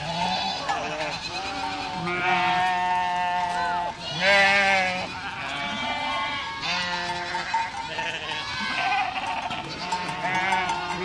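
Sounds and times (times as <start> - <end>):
goats bleating: 0.0 - 11.0.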